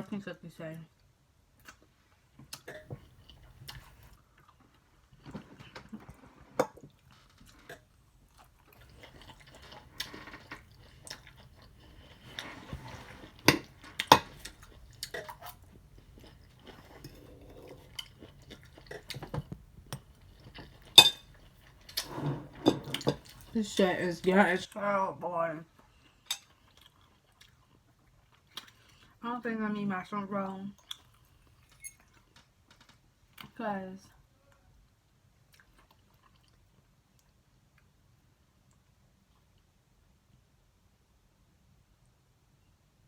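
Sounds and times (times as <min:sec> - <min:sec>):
chewing: 0:02.5 - 0:05.5, 0:06.8 - 0:24.7, 0:25.9 - 0:29.1, 0:30.8 - 0:32.2, 0:35.5 - 0:37.4
cutlery and container clicks: 0:20.9 - 0:21.3.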